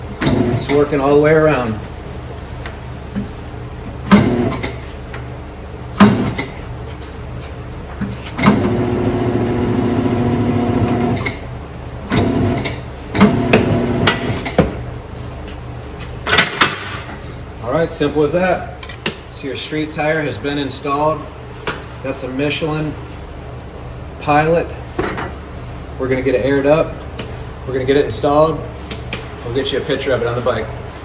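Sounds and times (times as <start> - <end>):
machine motor running: 0.0 - 19.0.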